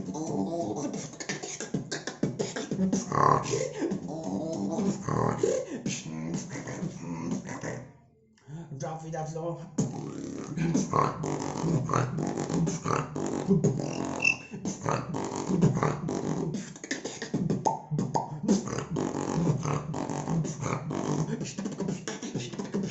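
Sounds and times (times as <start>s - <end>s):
beatboxing: 0.0s - 7.9s, 9.6s - 22.9s
low buzzing vocal bass: 2.7s - 7.8s, 9.7s - 16.7s, 17.4s - 21.7s.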